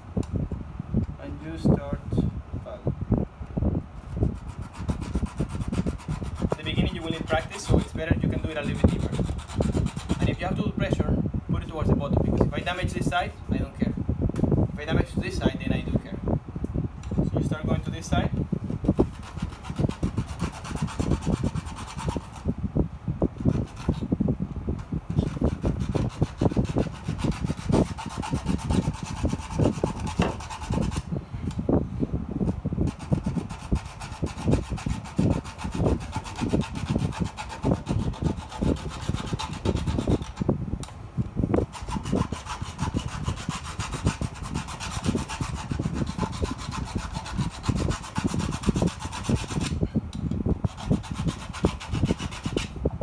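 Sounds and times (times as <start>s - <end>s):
hand file rasping: 4.1s - 10.6s, 19.0s - 22.5s, 23.4s - 24.1s, 25.1s - 31.1s, 32.8s - 40.5s, 41.6s - 49.8s, 50.7s - 52.7s.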